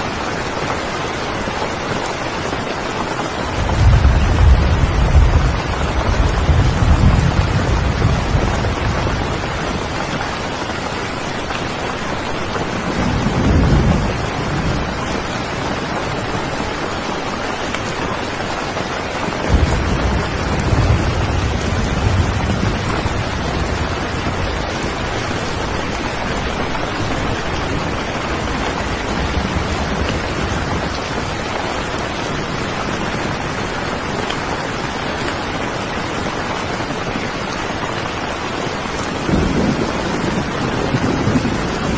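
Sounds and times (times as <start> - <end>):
steady rain: 0.0 - 41.9
thunder rumbling: 3.4 - 11.0, 12.4 - 17.0, 19.3 - 34.1, 37.9 - 41.9.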